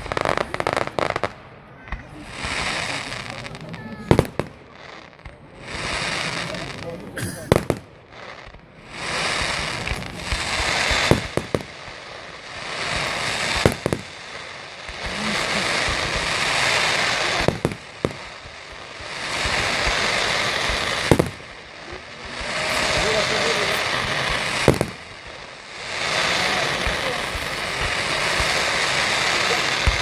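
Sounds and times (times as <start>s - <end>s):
fireworks crackling: 0.0s - 30.0s
firework shells bursting: 12.9s - 21.5s.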